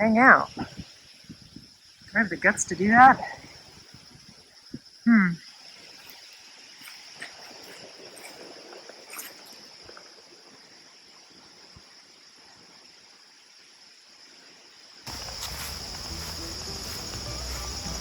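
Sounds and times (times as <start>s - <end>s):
insects chirring: 0.0s - 18.0s
background music: 15.1s - 18.0s.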